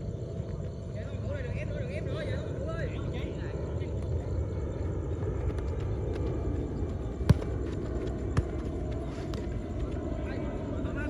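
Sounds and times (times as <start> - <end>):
football kick thuds: 5.4 - 9.9.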